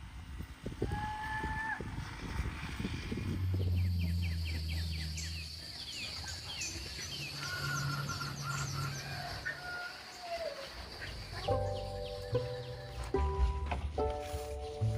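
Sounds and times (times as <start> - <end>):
low drawn-out hum: 0.0 - 9.5
small birds chirping: 2.3 - 13.7
high insect buzz: 2.8 - 13.2.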